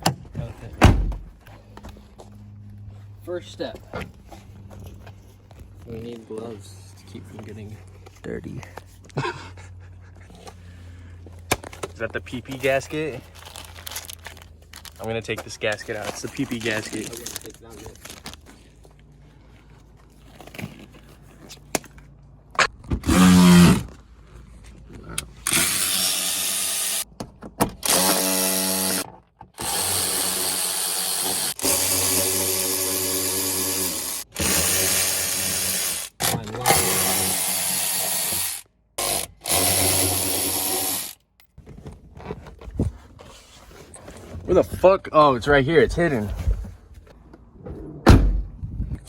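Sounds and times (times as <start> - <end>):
handheld power tool whirring: 23.0 - 23.9, 25.2 - 27.1, 27.8 - 41.2.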